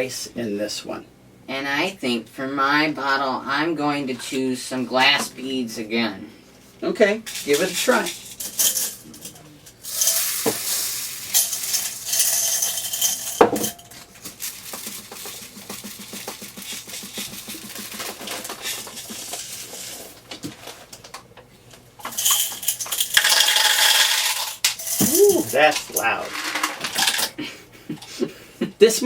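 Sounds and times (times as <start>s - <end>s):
beads rattling in plastic cup: 7.3s - 20.8s, 22.0s - 27.2s.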